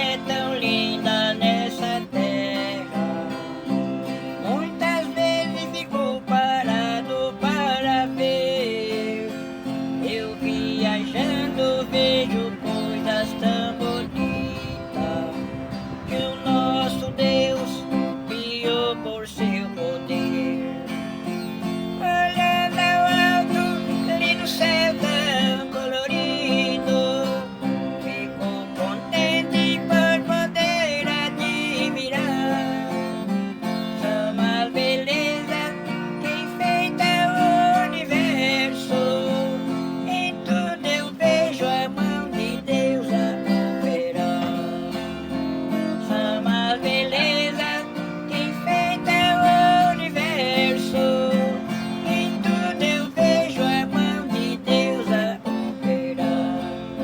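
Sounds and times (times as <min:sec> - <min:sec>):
wavering melodic lead: 0:00.0 - 0:41.2
acoustic guitar strumming: 0:00.0 - 0:57.0.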